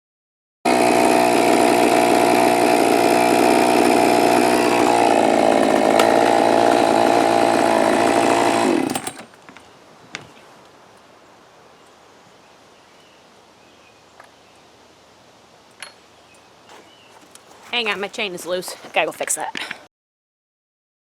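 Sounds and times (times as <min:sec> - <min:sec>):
chainsaw cutting wood: 0:00.7 - 0:09.4, 0:16.7 - 0:19.8.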